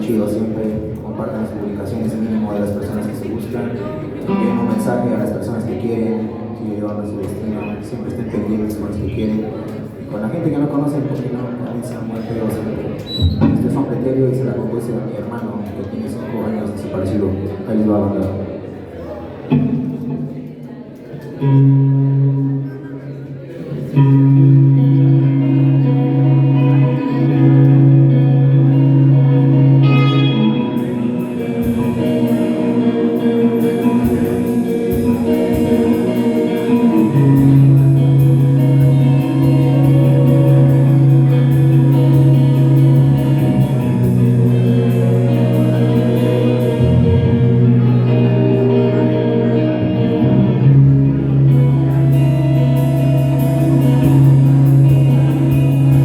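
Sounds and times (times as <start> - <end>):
live band with guitar: 0.0 - 56.0
fast high percussion ticking: 28.8 - 47.8, 51.5 - 56.0.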